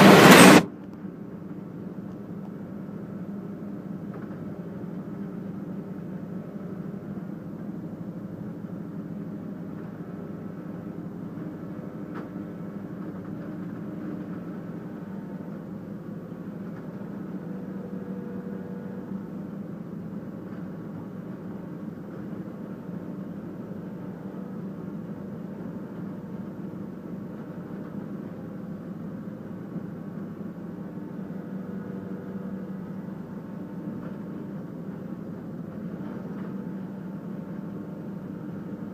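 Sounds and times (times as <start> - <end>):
log debarker machine hum: 0.0 - 1.0.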